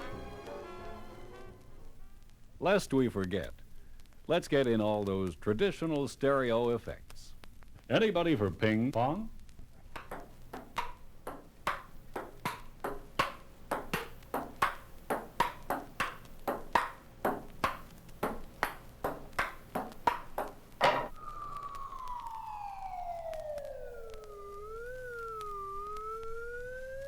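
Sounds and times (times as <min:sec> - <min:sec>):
ping-pong ball clicking: 0:09.9 - 0:21.1
siren falling in pitch: 0:20.8 - 0:27.0.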